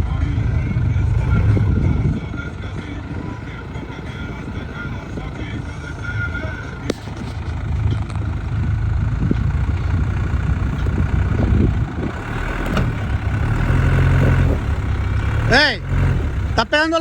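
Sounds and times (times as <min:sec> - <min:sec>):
off-road vehicle engine at low revs: 0:00.0 - 0:17.0.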